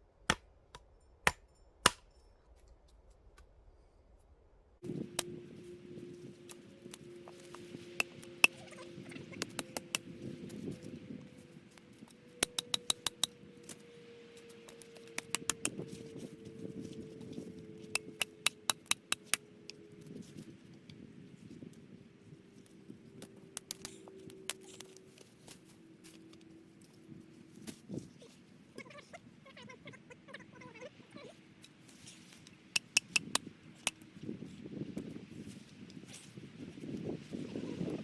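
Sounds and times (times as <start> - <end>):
conifer branches rustling: 4.8 - 18.5
sharp snapping clicks: 9.4 - 10.1, 12.4 - 13.4, 14.7 - 15.8, 18.0 - 19.4.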